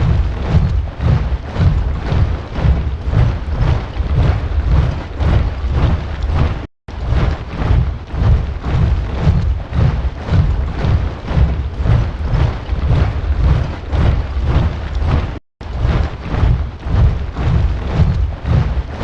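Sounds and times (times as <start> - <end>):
soldiers marching in step: 0.0 - 19.0.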